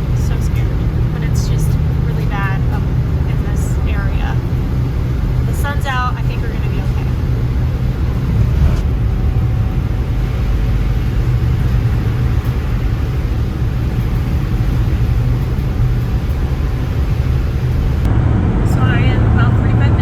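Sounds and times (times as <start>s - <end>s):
van engine and road rumble: 0.0s - 20.0s.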